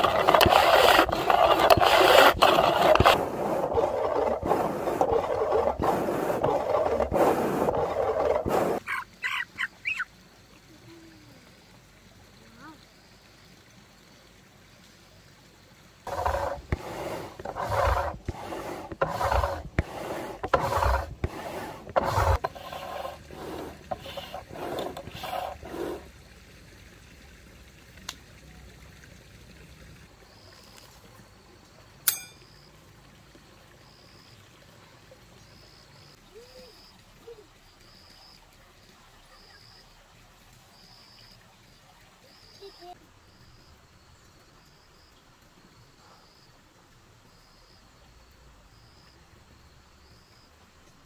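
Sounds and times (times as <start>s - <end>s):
rhythmic scraping strokes: 0.0s - 8.8s, 16.1s - 26.1s.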